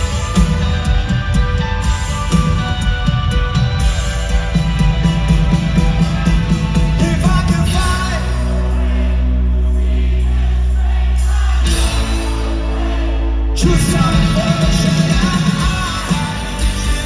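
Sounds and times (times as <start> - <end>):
live rock band playing: 0.0 - 9.2, 11.6 - 17.0
drums: 0.0 - 17.0
person singing: 11.8 - 17.0.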